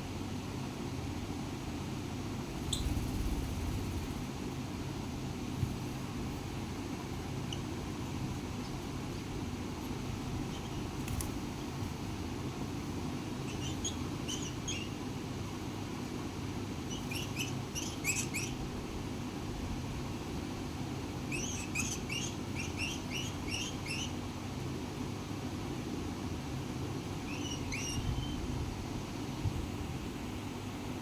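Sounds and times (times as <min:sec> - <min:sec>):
low background hum: 0:00.0 - 0:31.0
parrot chirping: 0:02.7 - 0:03.0, 0:10.4 - 0:10.9, 0:13.5 - 0:15.0, 0:16.9 - 0:18.6, 0:21.3 - 0:24.2, 0:27.2 - 0:28.4.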